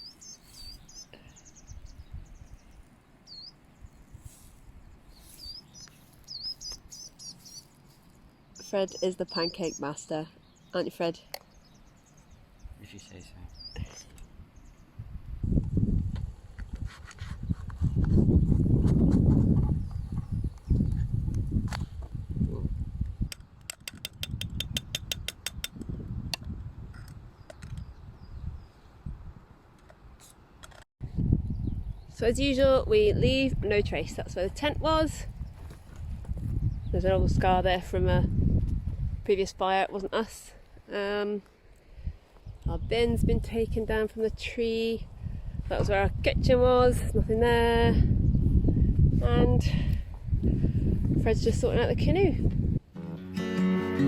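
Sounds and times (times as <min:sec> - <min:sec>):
small birds chirping: 0:00.0 - 0:15.1, 0:17.4 - 0:22.0, 0:27.0 - 0:29.1, 0:31.4 - 0:32.6, 0:35.0 - 0:37.3.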